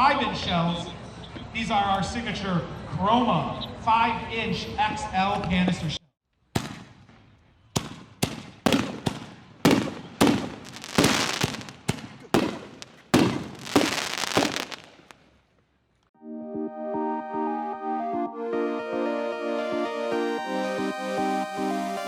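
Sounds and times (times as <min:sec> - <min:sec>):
firework shells booming: 0:06.5 - 0:15.3.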